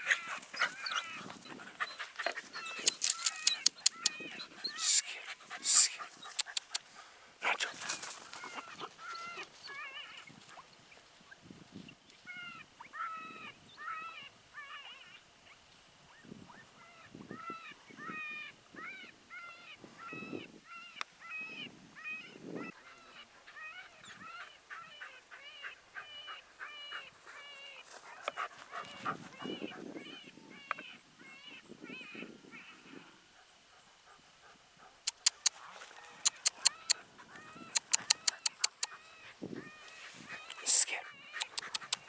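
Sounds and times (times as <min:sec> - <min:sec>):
dog whimpering and whining: 0:00.0 - 0:05.0.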